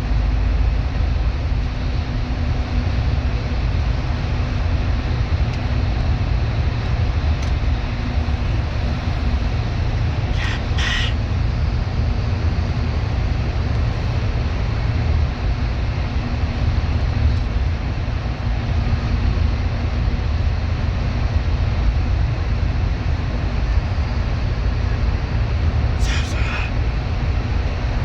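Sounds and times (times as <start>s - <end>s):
bus engine drone: 0.0s - 28.0s
road noise: 8.2s - 11.5s.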